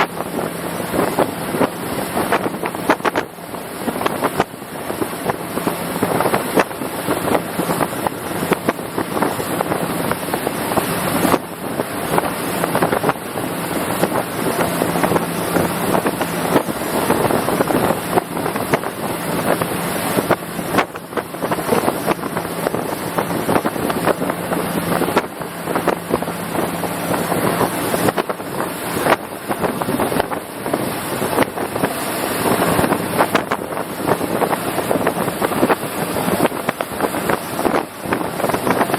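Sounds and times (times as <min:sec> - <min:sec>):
boat engine hum: 0:00.0 - 0:38.9
wind buffeting microphone: 0:00.0 - 0:38.9.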